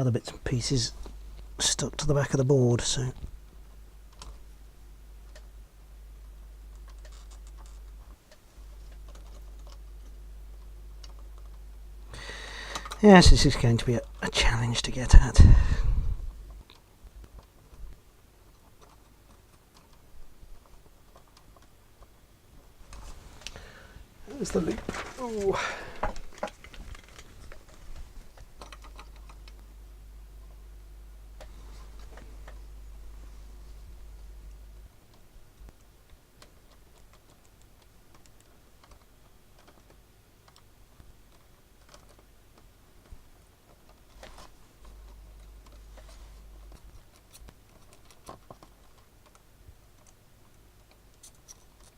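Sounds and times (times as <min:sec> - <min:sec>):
faint clicks and taps of tools: 0:25.9 - 0:29.7, 0:35.1 - 0:51.9.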